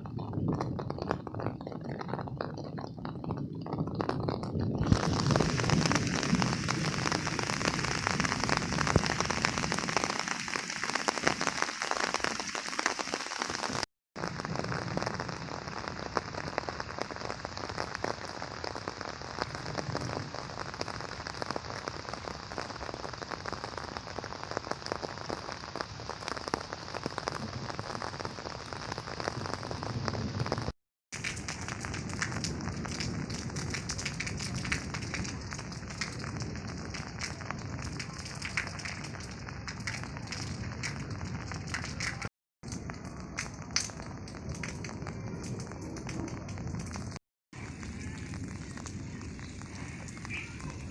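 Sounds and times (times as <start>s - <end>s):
steady rain patter: 0.0s - 50.9s.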